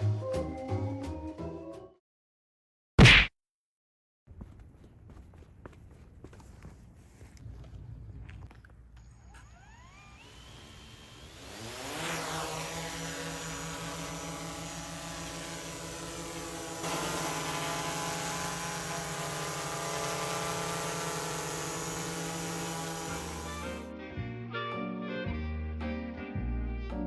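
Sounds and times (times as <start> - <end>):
drone propellers buzzing: 9.2 - 23.8.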